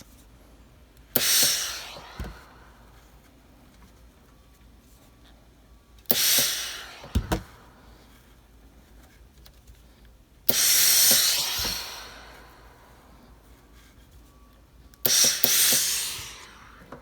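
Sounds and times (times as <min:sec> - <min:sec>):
steam iron hissing: 0:00.7 - 0:03.8, 0:06.0 - 0:08.4, 0:10.5 - 0:14.0, 0:15.0 - 0:17.0.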